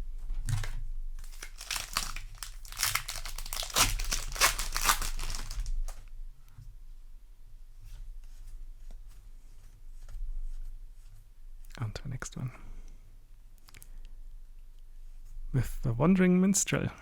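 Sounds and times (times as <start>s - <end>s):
foil wrapper tearing and crinkling: 0.6s - 6.0s.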